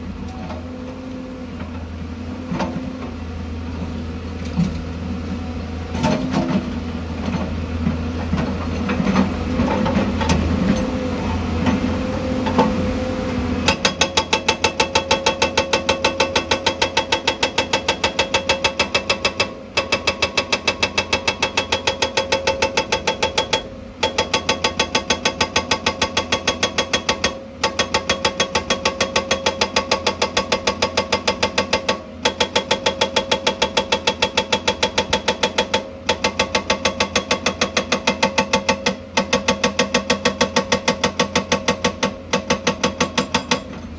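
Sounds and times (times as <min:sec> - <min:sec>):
excavator engine running: 0:00.0 - 0:43.9
hydraulic breaker hammer pounding: 0:13.6 - 0:43.9.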